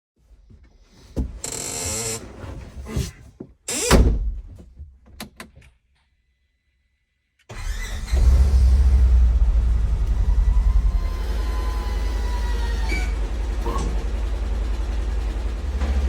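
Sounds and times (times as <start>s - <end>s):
vehicle engine droning: 7.5s - 16.0s.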